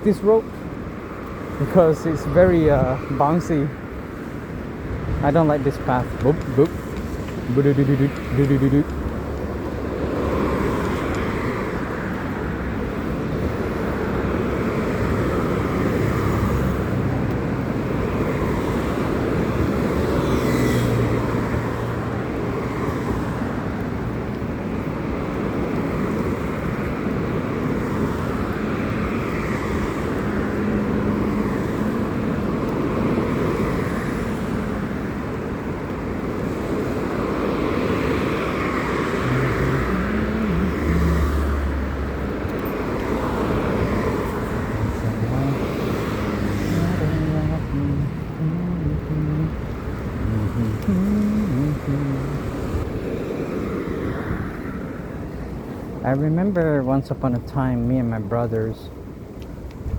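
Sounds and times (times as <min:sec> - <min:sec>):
wind on microphone: 0:35.7 - 0:55.6.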